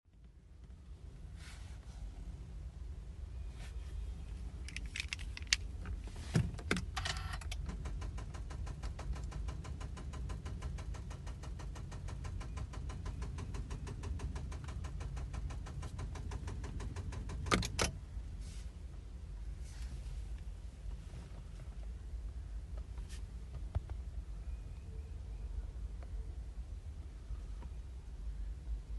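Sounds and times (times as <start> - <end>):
rapid clicking of car starter: 6.7 - 18.0.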